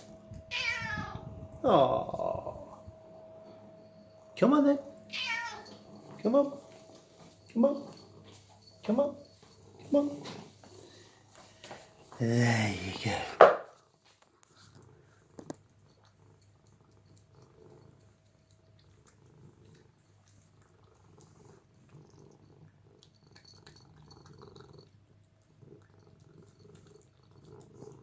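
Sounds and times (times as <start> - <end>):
cat purring: 0.0 - 11.2, 14.4 - 28.0.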